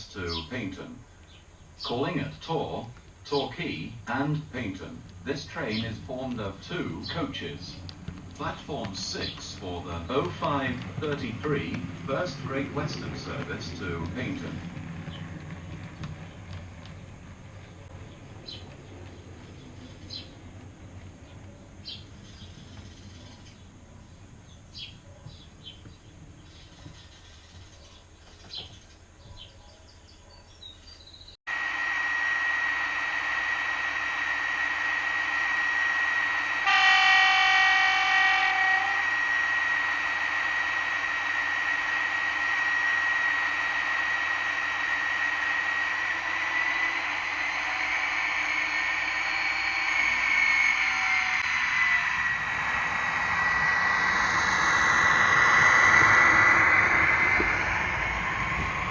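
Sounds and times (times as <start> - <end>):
train engine whine: 0.0 - 58.9
train horn blast: 31.5 - 58.9.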